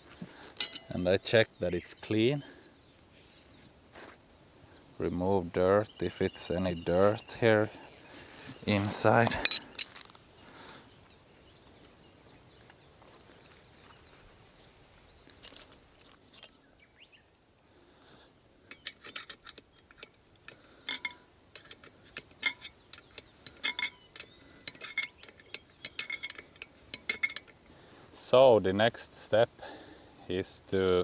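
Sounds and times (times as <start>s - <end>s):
metal hand tools clinking: 0.6s - 1.0s, 8.6s - 10.2s, 15.4s - 16.6s, 18.7s - 27.6s.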